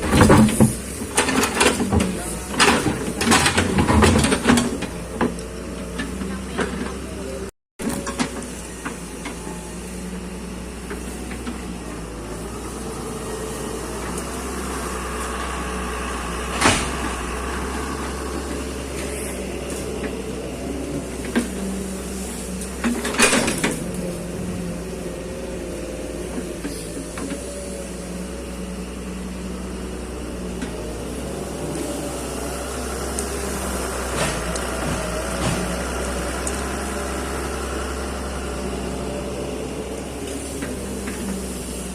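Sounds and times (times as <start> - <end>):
excavator engine running: 0.0 - 41.9.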